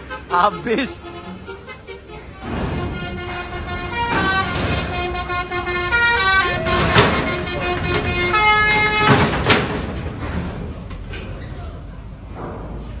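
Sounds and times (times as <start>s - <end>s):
multi-tone bus horn tune: 0.0s - 9.5s.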